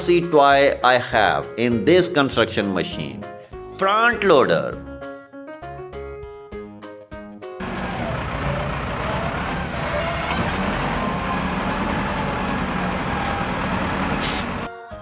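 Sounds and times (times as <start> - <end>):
heavy vehicle engine rumbling: 7.6 - 14.7.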